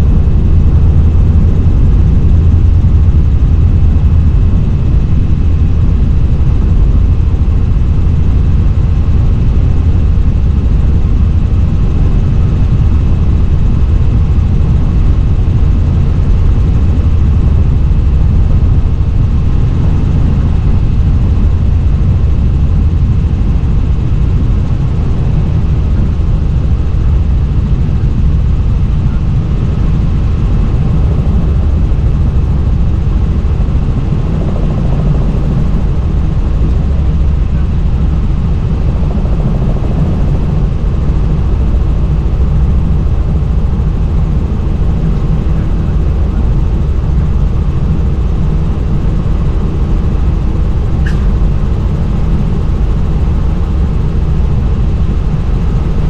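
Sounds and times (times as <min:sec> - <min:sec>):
helicopter low rumble: 0:00.0 - 0:56.0.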